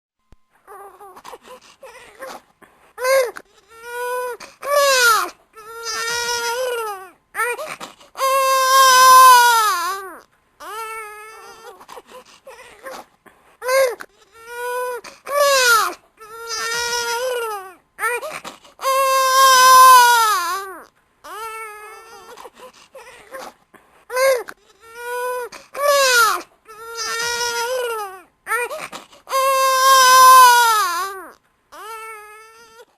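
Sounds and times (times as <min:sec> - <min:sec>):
infant crying: 0:00.7 - 0:02.4, 0:03.0 - 0:13.0, 0:13.6 - 0:32.9
infant catching breaths: 0:01.0 - 0:03.8, 0:07.6 - 0:08.2, 0:11.4 - 0:15.3, 0:18.2 - 0:18.8, 0:22.0 - 0:25.8, 0:28.7 - 0:29.3.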